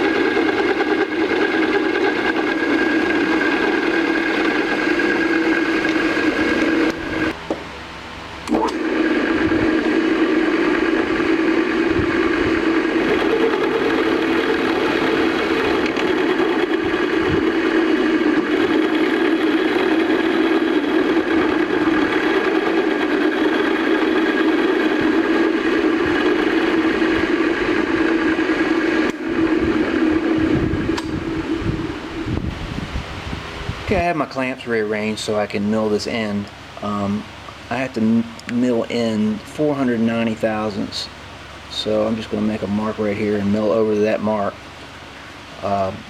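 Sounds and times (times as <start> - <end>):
milling machine cutting metal: 0.0 - 7.4, 8.4 - 32.1.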